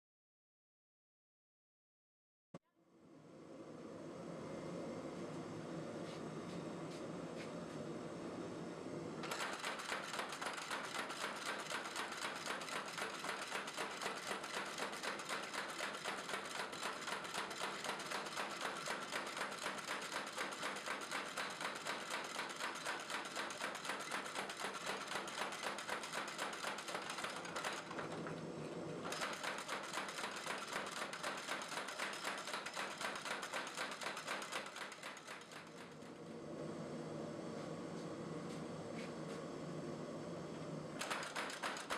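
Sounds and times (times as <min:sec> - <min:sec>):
power hammer striking rapidly: 0:41.0 - 0:41.9.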